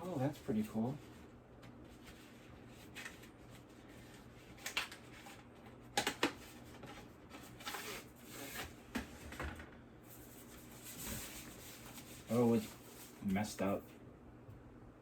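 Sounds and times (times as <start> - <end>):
tablet handling rustling and scraping: 1.7 - 9.4.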